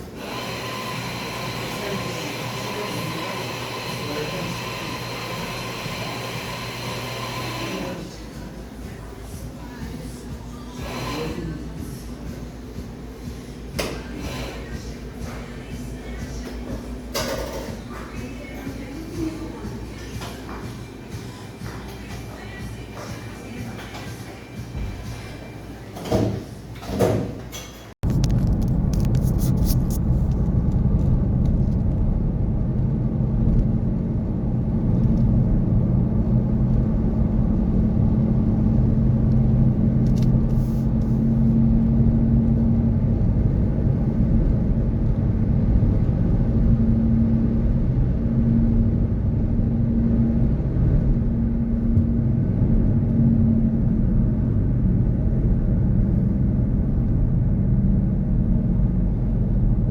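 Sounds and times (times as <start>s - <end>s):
city traffic rumble: 28.0s - 59.9s
low hum: 28.0s - 59.9s.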